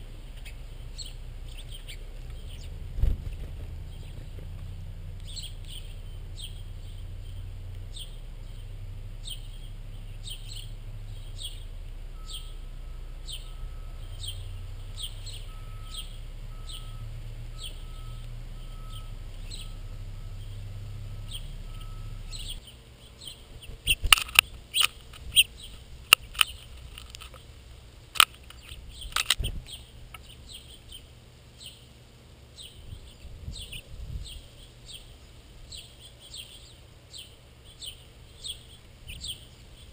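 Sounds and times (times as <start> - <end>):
bird chirping: 0.0 - 27.6, 28.2 - 39.9
low steady hum: 0.0 - 39.9.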